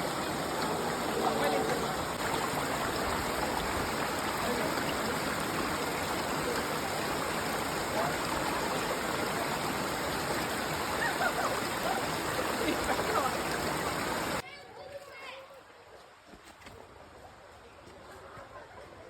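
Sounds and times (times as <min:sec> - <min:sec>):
stream running over stones: 0:00.0 - 0:14.4.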